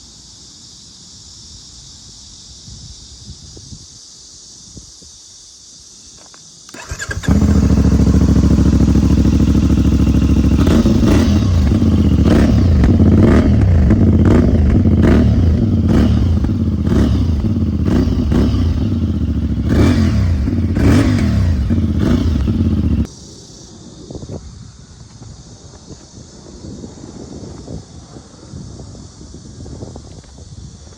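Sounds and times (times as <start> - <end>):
motorcycle engine revving: 6.7 - 23.1.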